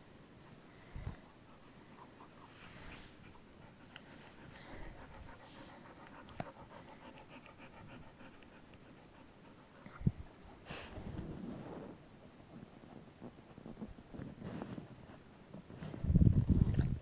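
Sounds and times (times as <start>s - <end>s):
dog panting: 1.1s - 11.0s.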